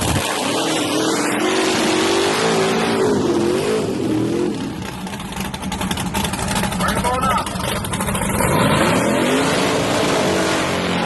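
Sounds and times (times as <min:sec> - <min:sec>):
drag car engine at full throttle: 0:00.0 - 0:11.0.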